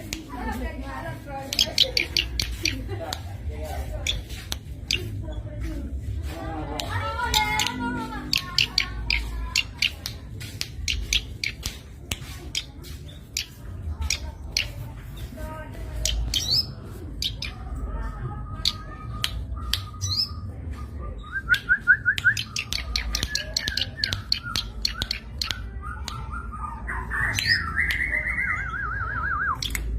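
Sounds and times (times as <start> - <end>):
bird calling with clicking notes: 1.5 - 3.3, 6.8 - 11.8, 18.6 - 20.4, 21.4 - 26.3, 27.1 - 28.8, 29.4 - 29.9.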